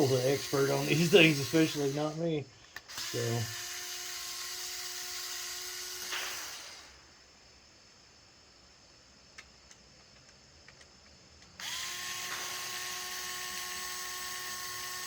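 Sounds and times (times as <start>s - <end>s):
electric screwdriver whining: 0.0s - 2.2s, 2.8s - 7.0s, 11.5s - 15.0s.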